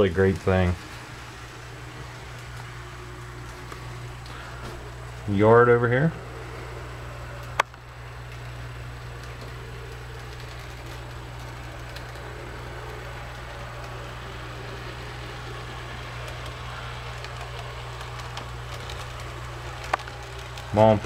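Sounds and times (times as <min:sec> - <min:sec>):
constant low hum: 0:00.0 - 0:21.0
model train rumbling on track: 0:00.0 - 0:21.0.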